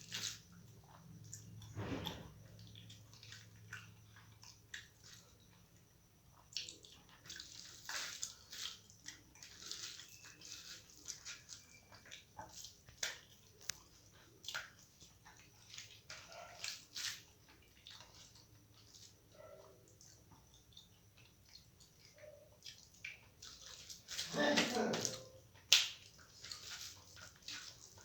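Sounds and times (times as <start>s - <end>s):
wet chewing and mouth clicks: 0.0s - 28.0s.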